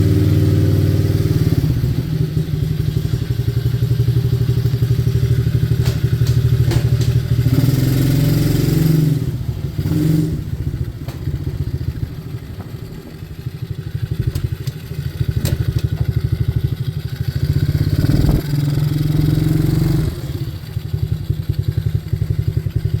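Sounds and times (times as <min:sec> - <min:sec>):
motorbike engine revving: 0:00.0 - 0:23.0
sharp clicks and knocks: 0:04.7 - 0:08.1, 0:11.0 - 0:16.4.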